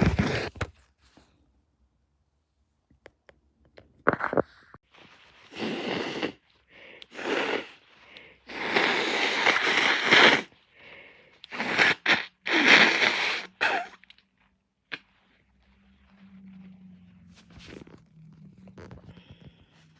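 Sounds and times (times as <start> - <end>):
person blowing nose: 0.0 - 0.7, 5.3 - 10.6, 11.4 - 14.2.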